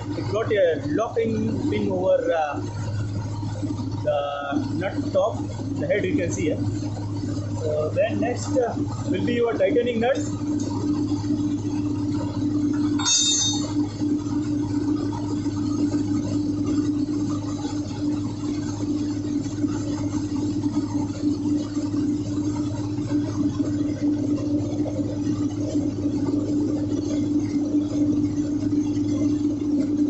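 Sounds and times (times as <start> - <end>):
engine room machinery drone: 0.0 - 30.0
spanner clinking on metal: 13.0 - 13.8.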